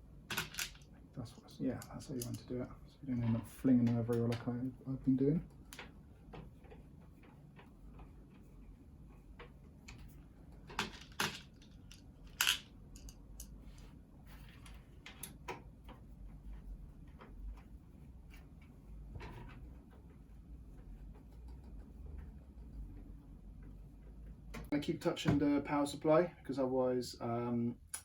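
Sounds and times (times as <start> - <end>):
parts clattering: 0.3 - 0.8, 10.6 - 13.6.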